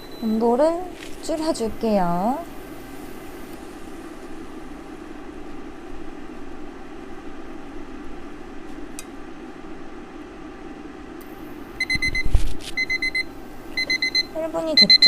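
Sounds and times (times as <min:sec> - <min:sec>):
kitchen timer beeping: 0:00.0 - 0:00.8, 0:11.8 - 0:12.2, 0:12.8 - 0:15.0
steady low hum: 0:00.0 - 0:15.0.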